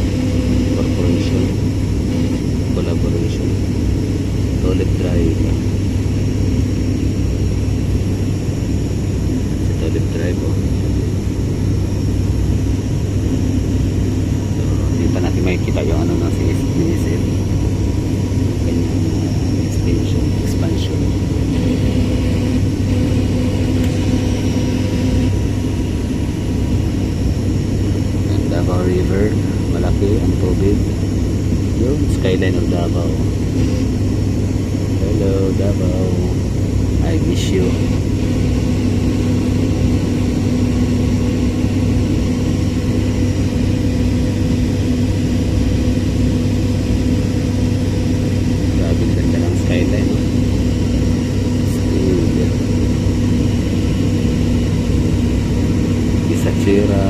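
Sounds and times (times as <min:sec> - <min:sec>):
airliner engines droning: 0:00.0 - 0:57.0.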